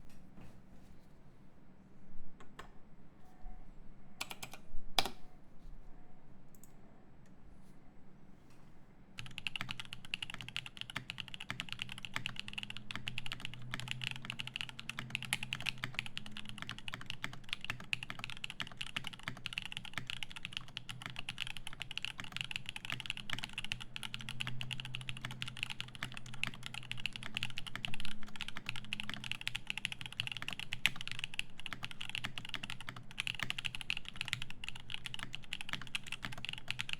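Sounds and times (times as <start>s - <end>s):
mechanical keyboard typing: 4.2s - 5.2s, 9.2s - 36.9s.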